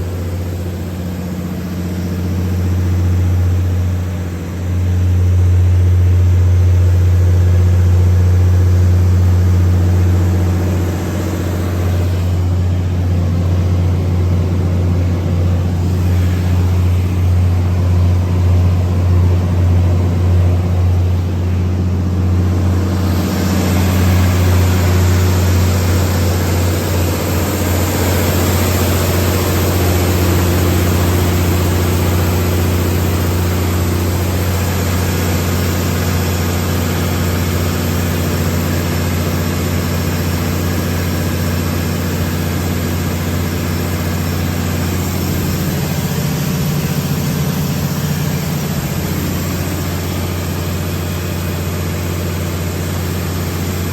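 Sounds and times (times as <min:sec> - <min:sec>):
diesel generator humming: 0:00.0 - 0:53.9
higher rushing noise: 0:09.8 - 0:33.6.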